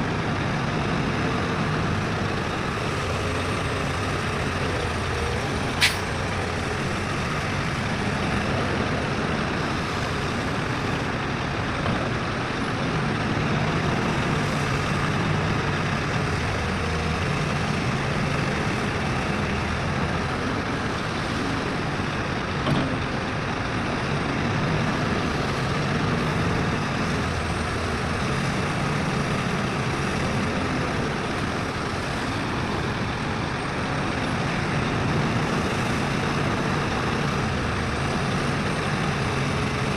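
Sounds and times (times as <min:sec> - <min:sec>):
diesel machinery engine hum: 0:00.0 - 0:39.9
sharp click: 0:05.8 - 0:06.1.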